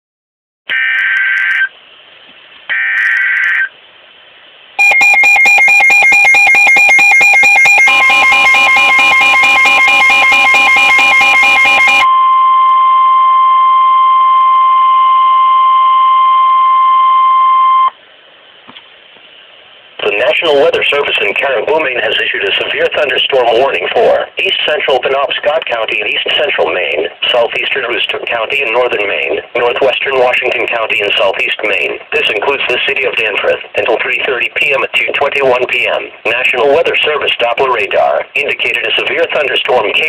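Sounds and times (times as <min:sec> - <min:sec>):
screeching data bursts: 0:04.8 - 0:12.1
rapidly pulsing electronic alarm: 0:04.8 - 0:12.4
steady warning alarm tone: 0:04.8 - 0:18.0.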